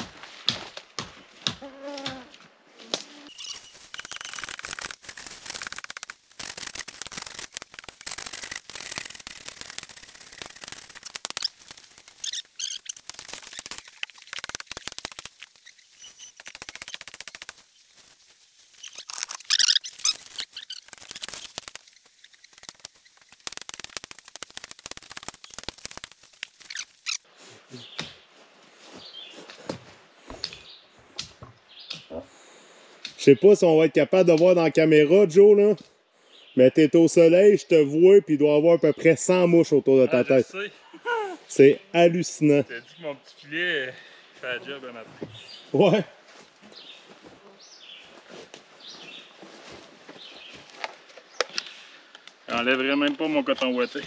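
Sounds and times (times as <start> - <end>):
branches and twigs snapping: 0.0 - 27.3, 49.4 - 53.7.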